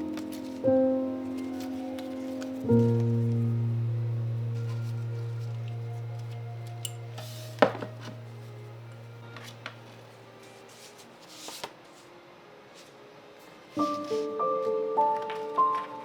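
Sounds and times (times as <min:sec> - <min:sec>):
piano tune: 0:00.0 - 0:09.9, 0:13.7 - 0:16.0
low music drone: 0:00.0 - 0:10.4.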